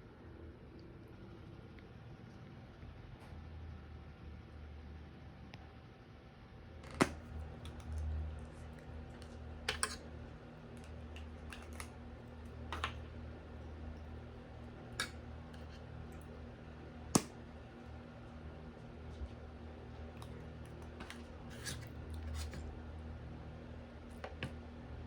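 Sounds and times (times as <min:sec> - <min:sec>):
faint low hum: 0:00.0 - 0:25.0.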